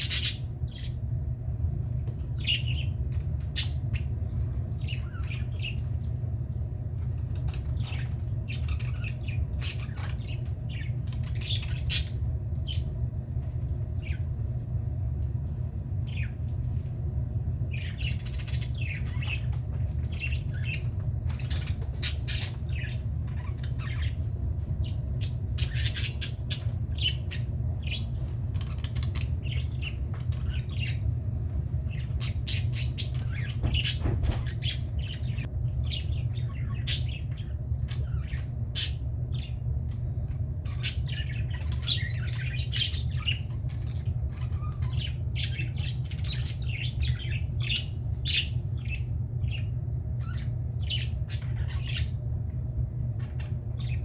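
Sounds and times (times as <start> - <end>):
budgerigars chattering: 0.0 - 1.0, 24.8 - 31.0
steady low hum: 0.0 - 54.0.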